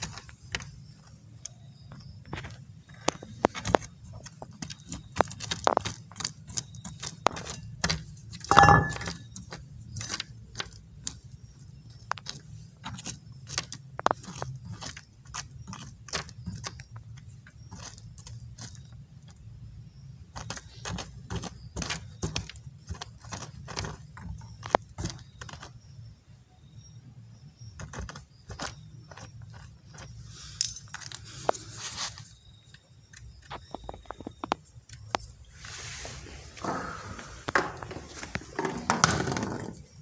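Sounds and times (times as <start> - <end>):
hard objects clicking and rattling: 0.0 - 19.5, 20.2 - 25.9
ringing knock: 8.5 - 9.3.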